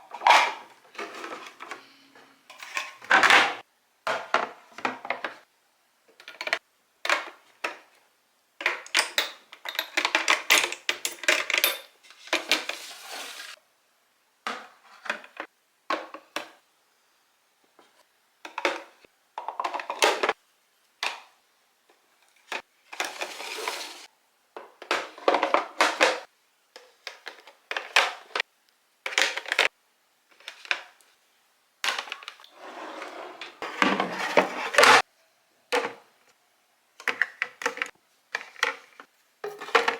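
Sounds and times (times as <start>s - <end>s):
hard items clattering and clinking: 0.0s - 1.9s, 8.6s - 13.6s, 22.4s - 28.4s, 31.9s - 35.0s, 37.0s - 39.9s.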